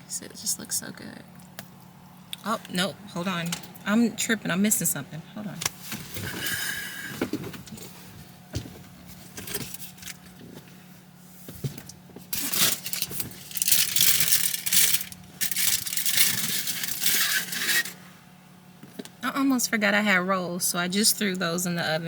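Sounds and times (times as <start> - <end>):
steady low hum: 0.0 - 22.0
packaging crinkling and rustling: 12.2 - 18.0
rattles and clicks: 12.3 - 17.9.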